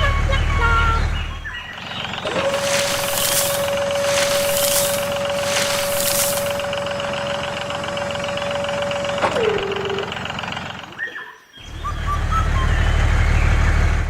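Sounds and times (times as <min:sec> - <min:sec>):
small motor whining: 0:02.2 - 0:09.3.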